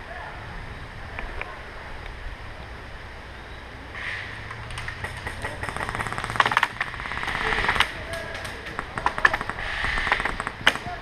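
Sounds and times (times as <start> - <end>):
loud cracks: 4.0 - 11.0
airsoft rifle firing full auto: 5.0 - 11.0.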